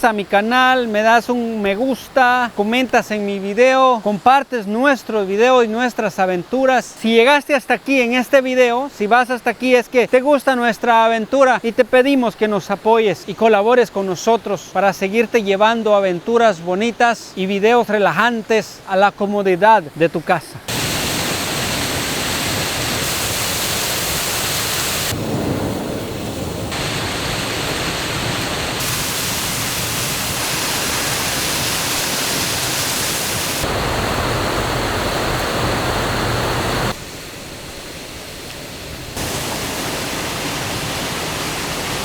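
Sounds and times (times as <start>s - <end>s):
waterfall rushing: 19.8s - 42.0s.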